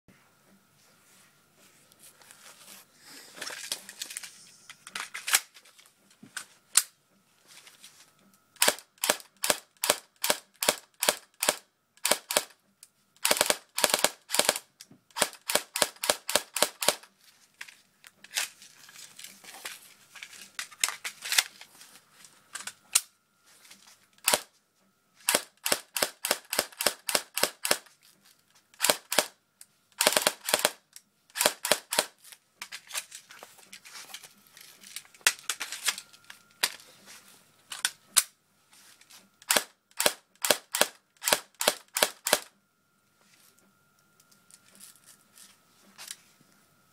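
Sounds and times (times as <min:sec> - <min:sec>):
airsoft gun firing: 0:13.2 - 0:14.6, 0:30.0 - 0:30.8, 0:39.5 - 0:42.5.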